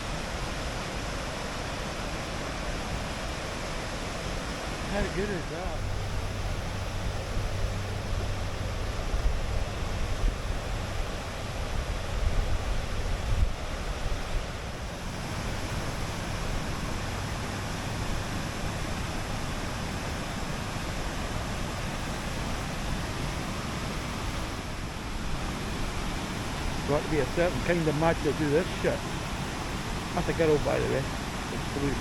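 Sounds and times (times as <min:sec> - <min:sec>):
waterfall rushing: 0:00.0 - 0:32.0
wind buffeting microphone: 0:05.0 - 0:19.9.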